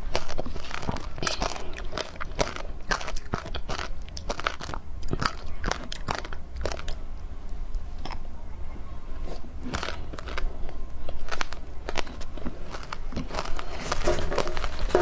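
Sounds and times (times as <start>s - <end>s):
chewing frozen ice crunches: 0.0s - 15.0s.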